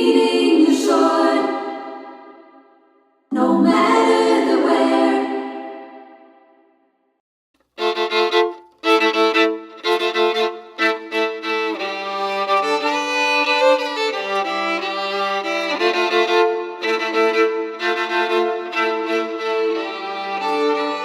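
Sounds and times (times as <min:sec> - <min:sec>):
violin playing: 0:07.6 - 0:21.0.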